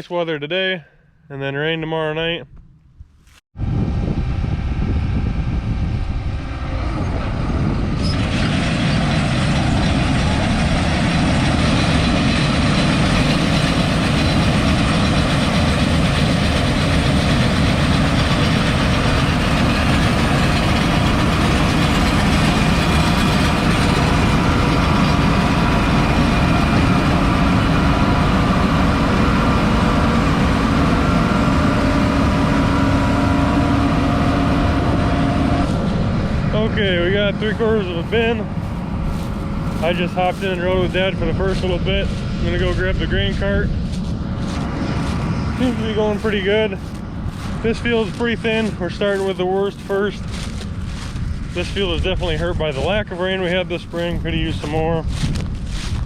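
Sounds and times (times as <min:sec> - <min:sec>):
combine harvester droning: 0:00.0 - 0:56.0.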